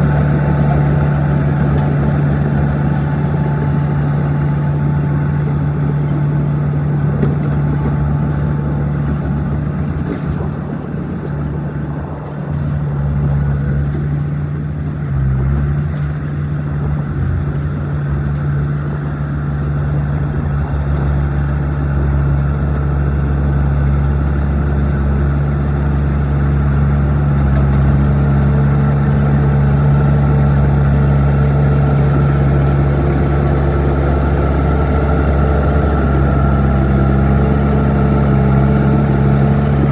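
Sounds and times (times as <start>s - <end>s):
diesel engine droning: 0.0s - 39.9s.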